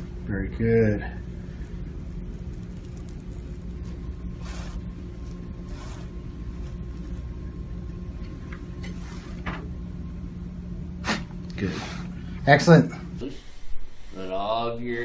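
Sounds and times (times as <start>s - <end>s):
low electrical hum: 0.0s - 15.0s
soft rustles: 2.5s - 7.3s.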